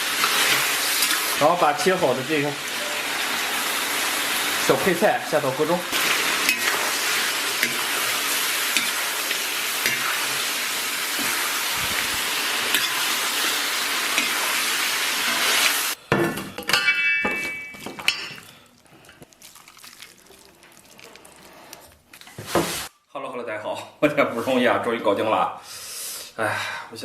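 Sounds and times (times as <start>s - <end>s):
spatula scraping wok: 0.0s - 1.4s, 5.9s - 16.0s, 20.5s - 22.9s
food sizzling in a wok: 0.0s - 16.0s, 22.3s - 22.9s.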